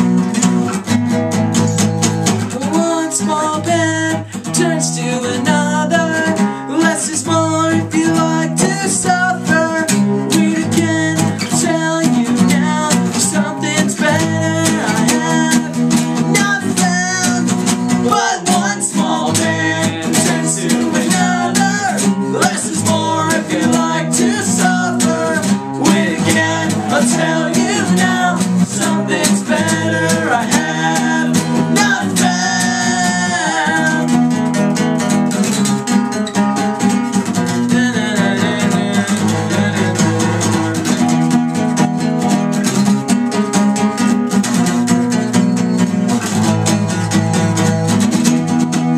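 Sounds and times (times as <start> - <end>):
acoustic guitar strumming: 0.0 - 48.9
person singing: 2.4 - 35.1, 37.1 - 41.1.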